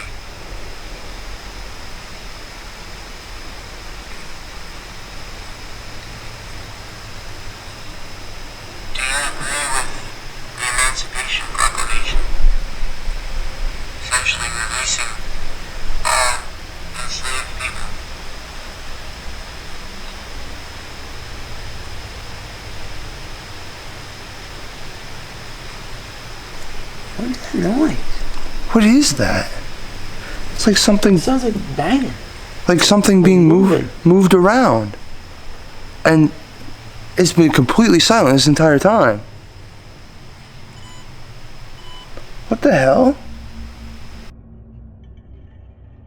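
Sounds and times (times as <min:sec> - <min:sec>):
background hiss: 0:00.0 - 0:44.3
low rumble: 0:43.2 - 0:46.0.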